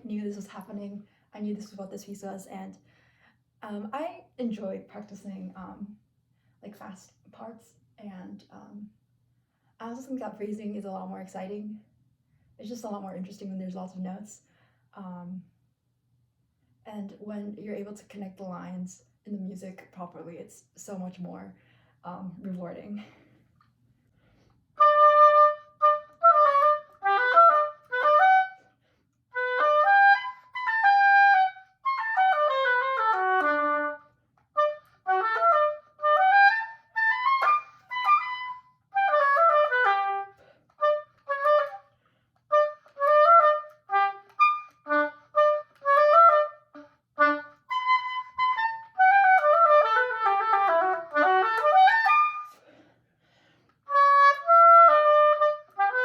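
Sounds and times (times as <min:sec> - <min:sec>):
solo oboe playing fast notes: 0:24.8 - 0:28.6, 0:29.3 - 0:41.9, 0:42.5 - 0:52.6, 0:53.9 - 0:56.0.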